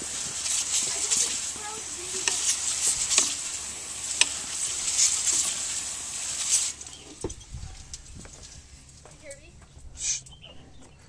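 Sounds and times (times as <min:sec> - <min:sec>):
aerosol spray can hissing: 0:00.0 - 0:07.1.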